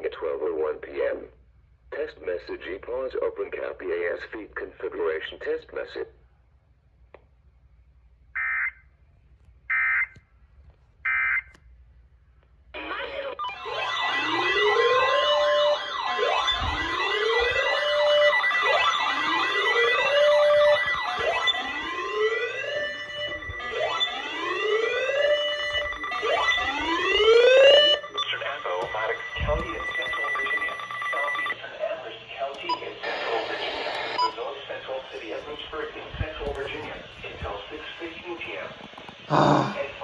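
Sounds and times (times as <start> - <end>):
overlapping siren wails: 12.8 - 31.6.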